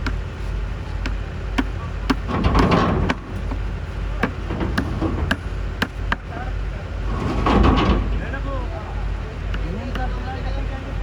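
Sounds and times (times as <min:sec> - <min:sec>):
low engine rumble: 0:00.0 - 0:11.0
sharp knocks and clunks: 0:01.0 - 0:08.7.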